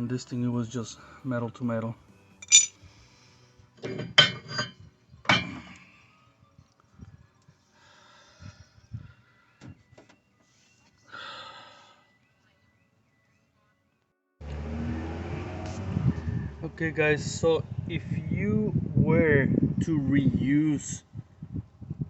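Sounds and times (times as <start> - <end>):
ringing metallic clinks: 2.4 - 2.7.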